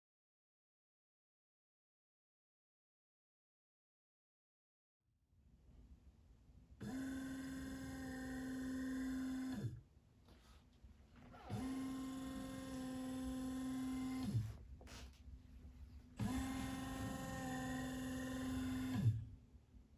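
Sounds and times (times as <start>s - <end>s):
electric motor humming: 6.8s - 9.7s, 11.4s - 14.5s, 16.2s - 19.2s.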